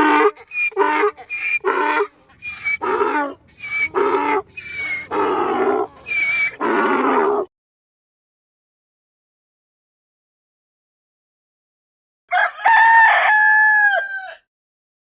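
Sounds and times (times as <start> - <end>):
animal calling in two-part rhythm: 0.0 - 7.3.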